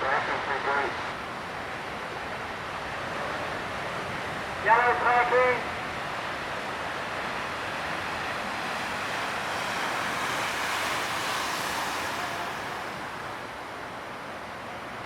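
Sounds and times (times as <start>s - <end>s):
surf breaking: 7.1s - 14.6s.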